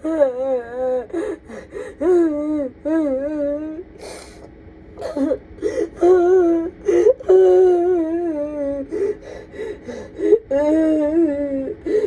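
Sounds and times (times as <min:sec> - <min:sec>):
woman sobbing: 0:00.0 - 0:12.0
gasping breaths: 0:08.9 - 0:10.5.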